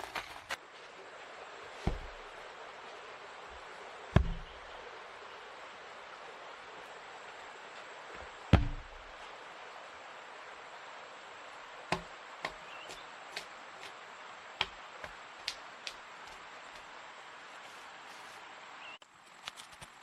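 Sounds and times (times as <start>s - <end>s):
heavy thud on log: 1.8s - 2.2s, 4.2s - 4.6s, 8.5s - 9.1s
sharp wooden knocks: 1.8s - 2.2s, 4.2s - 4.6s, 8.5s - 9.0s, 11.9s - 12.6s.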